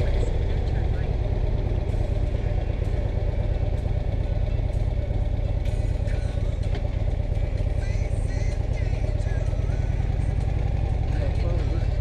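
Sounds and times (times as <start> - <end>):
motorcycle engine rumbling: 0.0 - 12.0.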